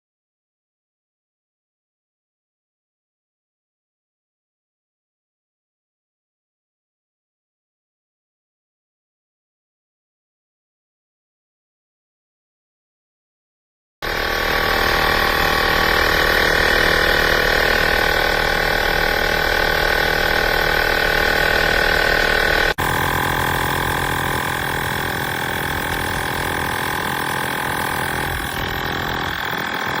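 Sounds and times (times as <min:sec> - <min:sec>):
air compressor running: 0:14.0 - 0:30.0.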